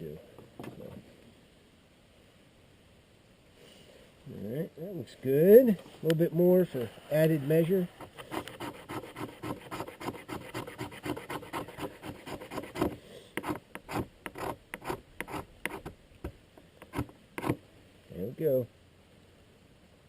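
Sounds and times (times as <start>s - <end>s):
knife scraping wood stick: 6.8s - 15.9s, 16.8s - 17.6s.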